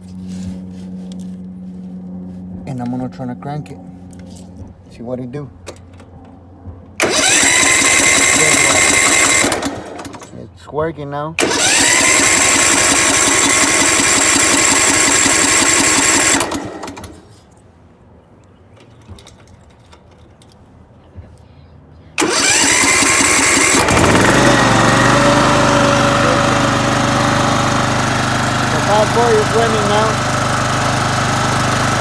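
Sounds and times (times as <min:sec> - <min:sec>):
engine running steadily: 0:00.0 - 0:10.4, 0:11.4 - 0:17.6, 0:22.2 - 0:32.0
electric starter cranking engine: 0:07.0 - 0:10.4, 0:11.4 - 0:17.4, 0:22.2 - 0:32.0.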